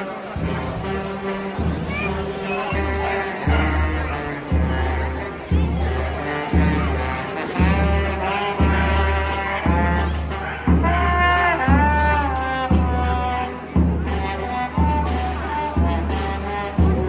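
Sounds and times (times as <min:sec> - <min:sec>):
horns playing melody: 0:00.0 - 0:17.0
heavy low beat: 0:00.3 - 0:13.0.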